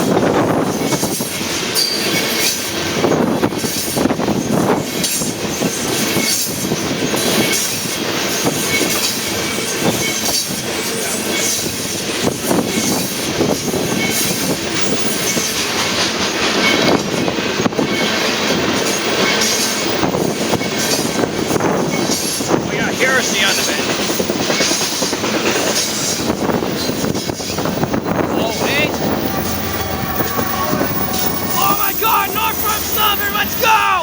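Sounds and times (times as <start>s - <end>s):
train wheels rumbling on rail: 0.0s - 34.0s
high wheel squeals: 23.2s - 34.0s.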